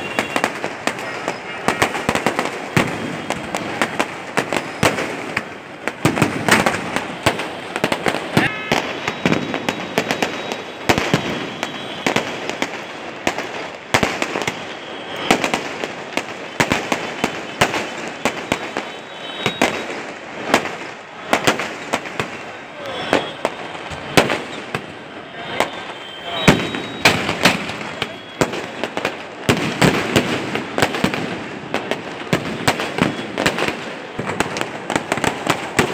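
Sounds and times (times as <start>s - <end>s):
fireworks bangs and crackles: 0.0s - 35.9s
voices: 7.2s - 9.5s, 22.4s - 29.1s.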